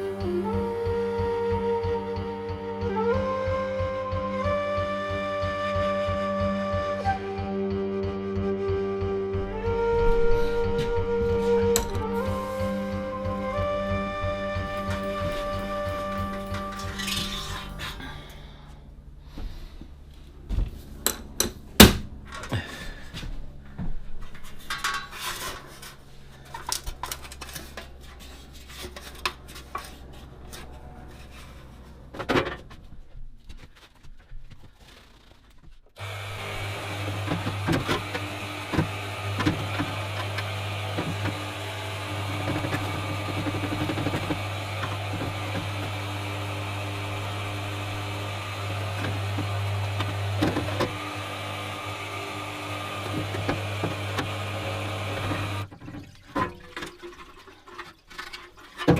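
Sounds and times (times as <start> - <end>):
power tool grinding: 11.4 - 18.5, 36.0 - 55.7
scraping and knocking on metal: 24.3 - 33.0.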